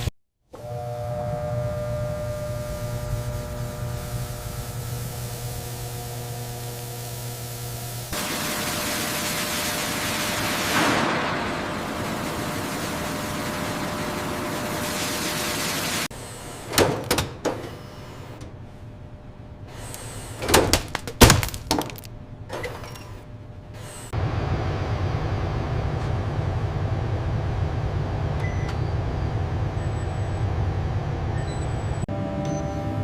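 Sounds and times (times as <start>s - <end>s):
machine hum with held tones: 0.5s - 16.5s
loud even hiss: 2.6s - 16.8s.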